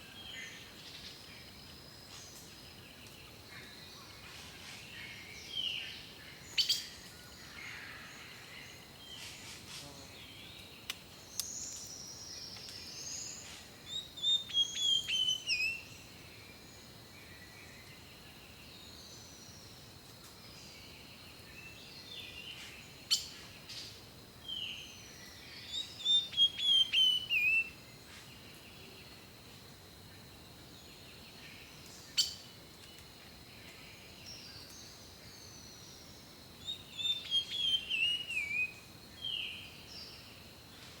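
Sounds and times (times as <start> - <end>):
songbirds singing: 0.0 - 41.0
bird chirps and calls: 36.6 - 38.8.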